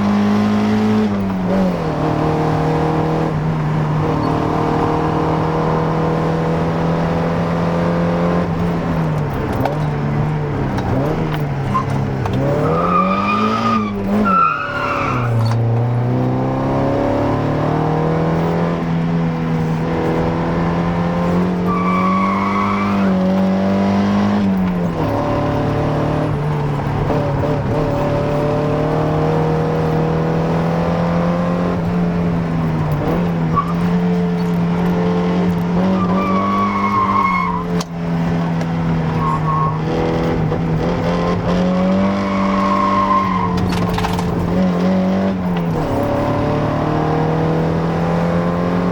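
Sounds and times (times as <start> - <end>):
car engine running hard: 0.0 - 48.9
tyre squeals: 11.6 - 15.6, 21.6 - 23.3, 35.8 - 37.9, 39.1 - 39.9, 41.8 - 44.4.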